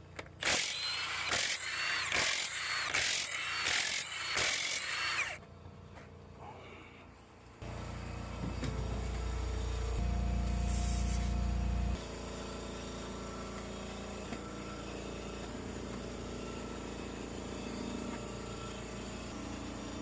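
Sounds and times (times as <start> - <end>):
impact wrench bursts: 0.4 - 5.4
steady low hum: 5.4 - 20.0.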